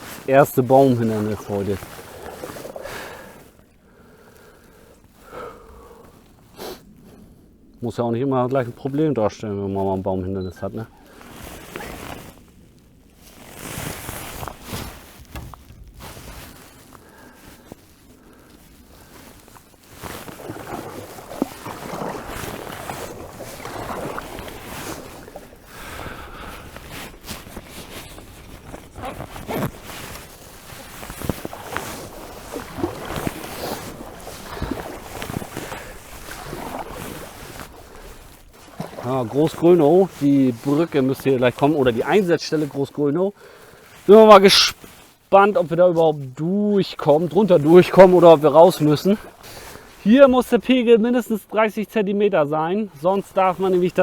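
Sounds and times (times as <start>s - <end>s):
paddle swishing in water: 0.0s - 7.8s, 8.6s - 51.6s, 52.9s - 54.0s
small splashes and knocks: 0.5s - 3.8s, 13.3s - 42.0s.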